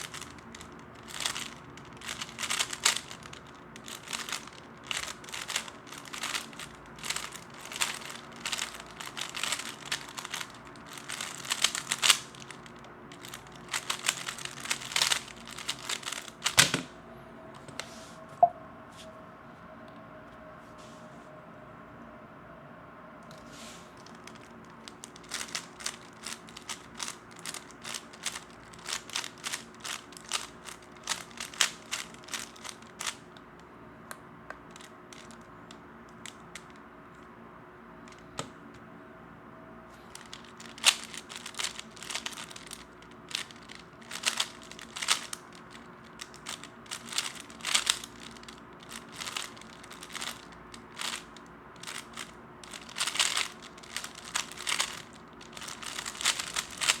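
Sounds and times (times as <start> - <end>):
puzzle cube plastic clicks: 0.0 - 16.9, 24.0 - 33.3, 40.1 - 57.0.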